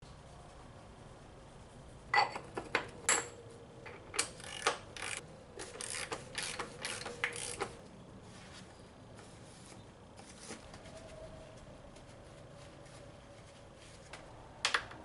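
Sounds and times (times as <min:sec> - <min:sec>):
ratchet wrench clicking: 0:04.2 - 0:07.8.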